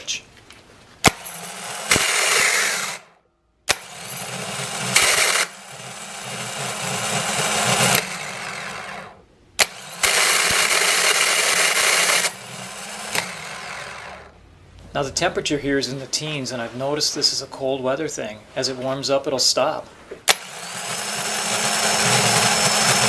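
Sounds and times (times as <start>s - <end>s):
starter motor grinding: 1.2s - 3.1s, 3.7s - 14.4s, 20.1s - 23.0s.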